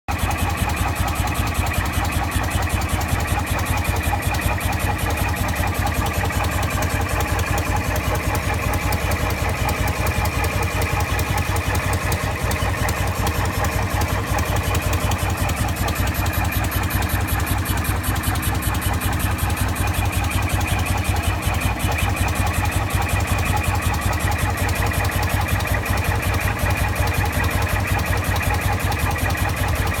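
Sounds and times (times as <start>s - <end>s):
motorcycle engine running: 0.1s - 30.0s.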